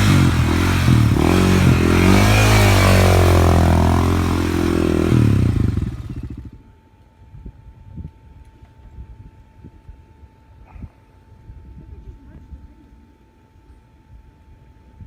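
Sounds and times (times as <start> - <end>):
vehicle engine revving: 0.0 - 6.5.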